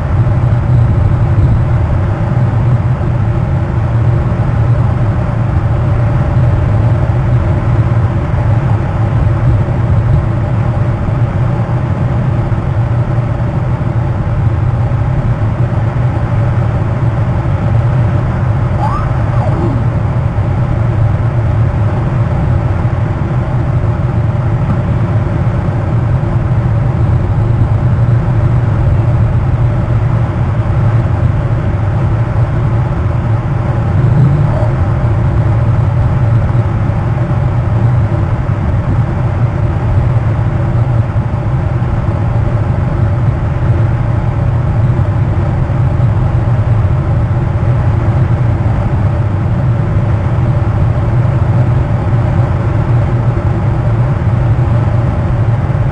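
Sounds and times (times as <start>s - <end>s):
low drone with steady tones: 14.0s - 55.9s.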